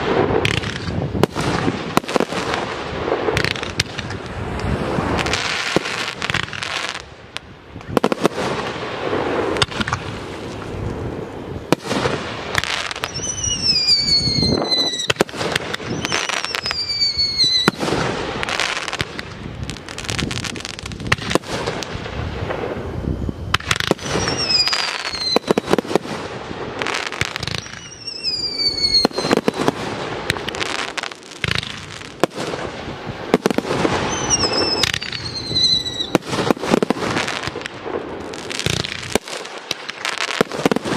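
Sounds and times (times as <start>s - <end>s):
whistling fireworks: 0.0s - 40.9s
firework shells bursting: 9.4s - 10.7s.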